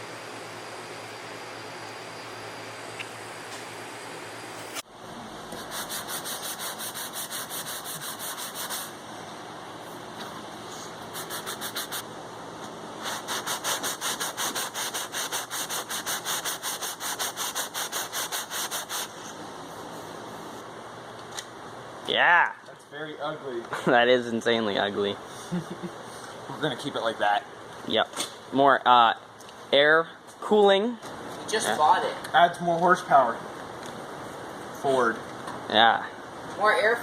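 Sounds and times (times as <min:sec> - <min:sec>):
steady hum: 0:00.0 - 0:37.0
sandpaper rubbing back and forth: 0:05.5 - 0:09.0, 0:11.0 - 0:12.0, 0:13.0 - 0:19.3.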